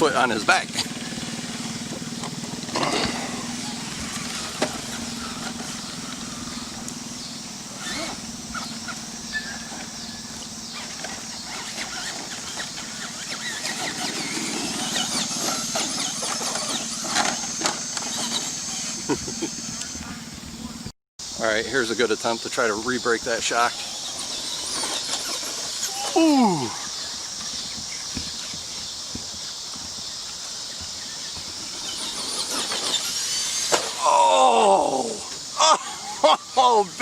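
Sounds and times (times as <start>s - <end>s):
thin high whine: 0.0s - 27.2s
tyres on dirt and wind: 0.0s - 37.0s
toy truck motor whining: 0.2s - 20.7s, 22.8s - 28.5s, 31.2s - 36.8s.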